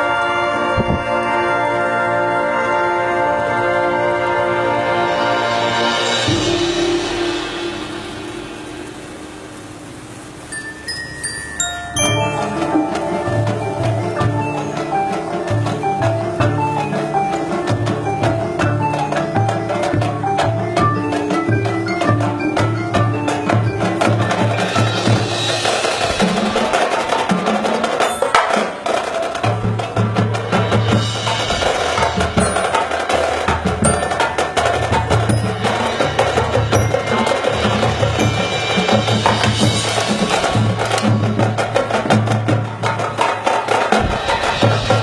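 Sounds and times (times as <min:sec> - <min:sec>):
marching band playing: 0:00.0 - 0:45.0
low pulsing notes: 0:00.2 - 0:26.7.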